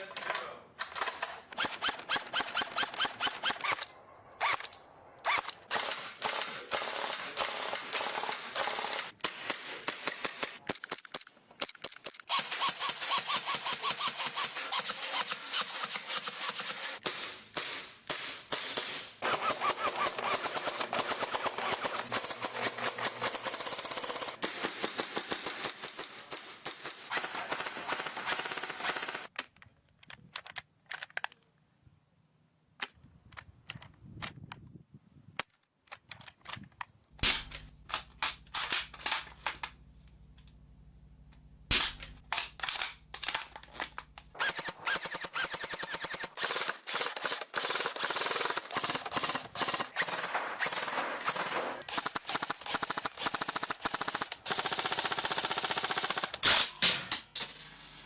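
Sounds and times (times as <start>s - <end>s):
airsoft guns firing: 5.3s - 11.2s, 12.3s - 29.3s, 37.2s - 39.8s, 41.7s - 57.3s.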